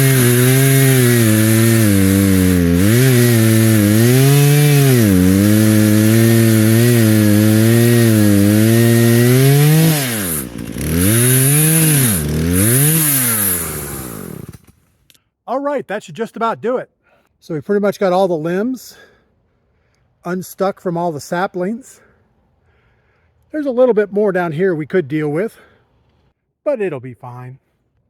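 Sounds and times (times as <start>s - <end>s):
chainsaw idling and revving: 0.0s - 14.9s
chainsaw cutting wood: 0.0s - 15.2s.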